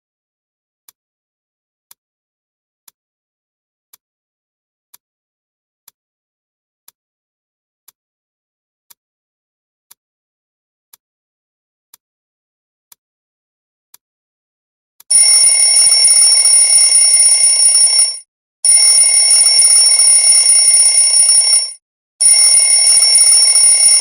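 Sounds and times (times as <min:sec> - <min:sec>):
alarm clock ringing: 0:15.1 - 0:24.0.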